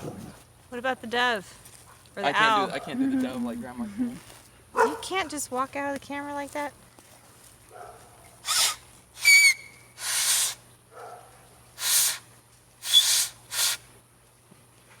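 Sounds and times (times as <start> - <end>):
brief whistle: 8.5 - 10.6, 12.8 - 13.8
person blowing breathy puffs: 10.0 - 10.6, 11.8 - 13.9.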